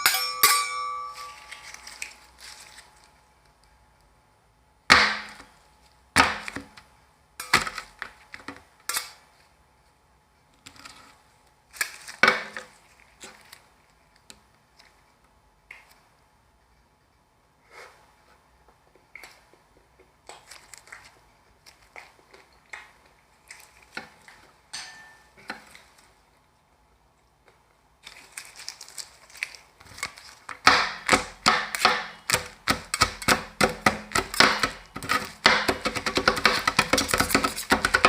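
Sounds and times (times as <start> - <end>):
metal spatulas knocking on steel plate: 0.0 - 1.4, 24.8 - 25.3.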